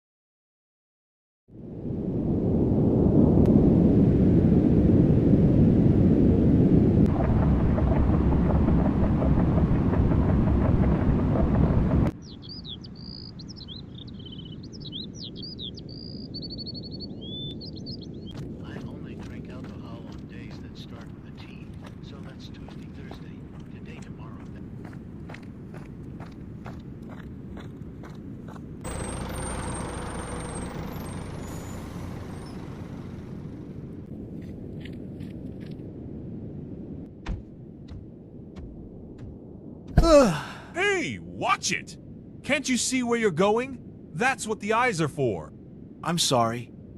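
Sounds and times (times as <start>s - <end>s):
low rumble: 1.6s - 12.2s, 17.8s - 40.0s, 43.8s - 44.2s
loud deep rumbling: 2.0s - 12.2s
small birds chirping: 12.2s - 33.7s.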